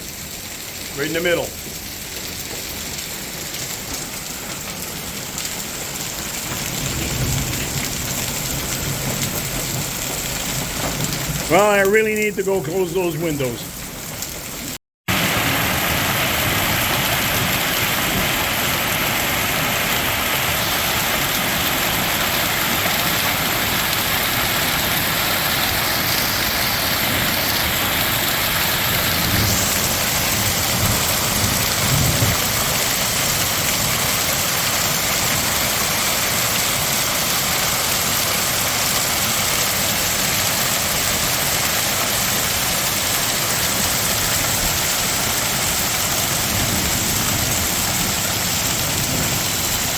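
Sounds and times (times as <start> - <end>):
hail and heavy rain pelting: 0.0 - 49.9.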